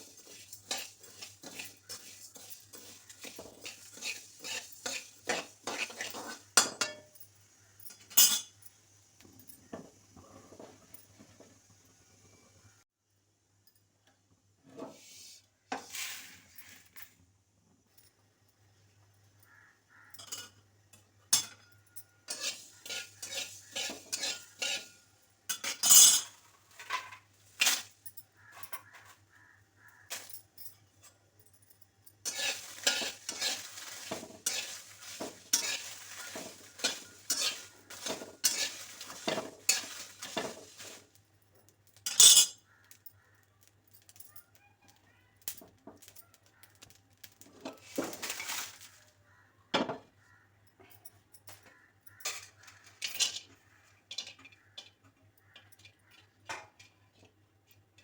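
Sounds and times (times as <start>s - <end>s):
metal spoon scraping pan: 0.0s - 7.2s, 22.3s - 27.9s, 32.2s - 41.1s, 42.1s - 42.6s
spoon clinking against pan: 0.2s - 7.2s, 21.3s - 26.3s.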